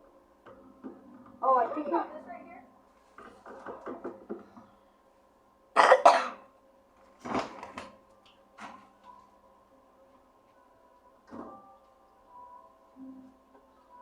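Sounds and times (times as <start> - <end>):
person coughing and spluttering: 5.8 - 6.4.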